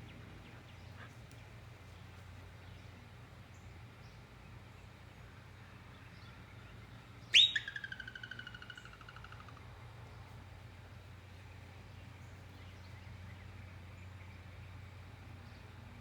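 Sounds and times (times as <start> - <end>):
groundhog alarm whistle: 7.4 - 7.9.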